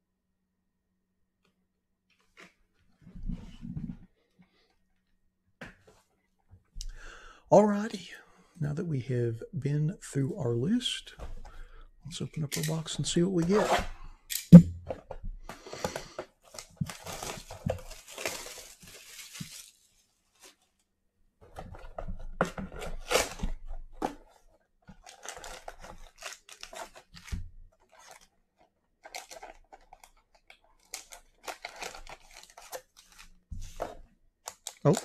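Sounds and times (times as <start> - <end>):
cardboard box and wrapping tearing: 16.5 - 20.6, 22.8 - 23.6, 25.0 - 28.3, 30.8 - 33.3.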